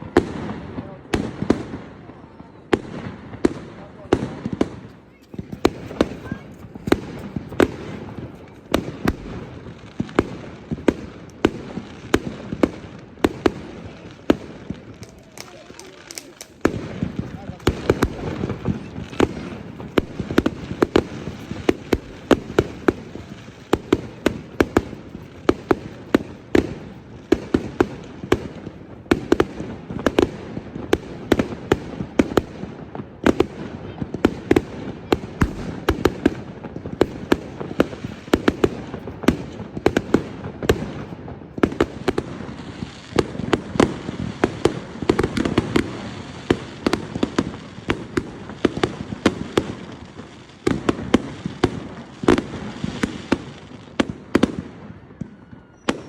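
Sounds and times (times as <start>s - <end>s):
fireworks sharp bangs: 0.0s - 56.0s
distant explosions rumbling: 2.9s - 15.4s, 16.6s - 32.2s.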